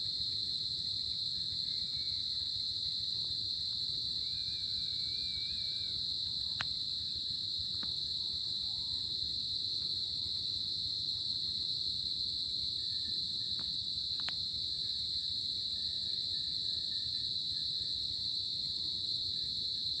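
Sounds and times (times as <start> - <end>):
crickets trilling: 0.0 - 20.0
faint clicks: 13.6 - 14.4.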